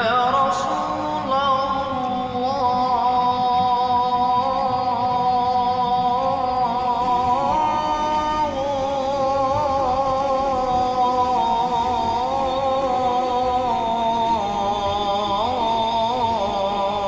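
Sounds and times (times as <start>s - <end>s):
man singing melismatic notes: 0.0s - 17.0s.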